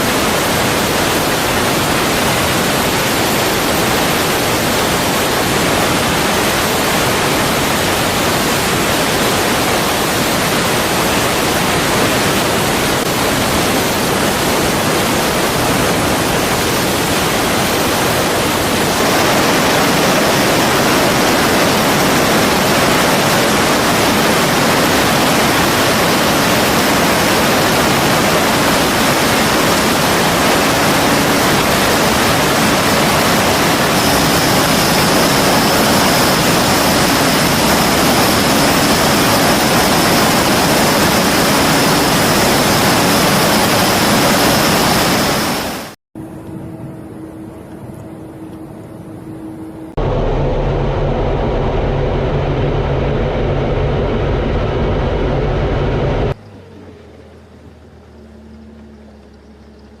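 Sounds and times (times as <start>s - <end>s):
high steady whine: 0.0s - 60.0s
machinery rushing roar: 0.0s - 60.0s
quiet humming: 46.2s - 60.0s
loud low rumble: 49.4s - 59.5s.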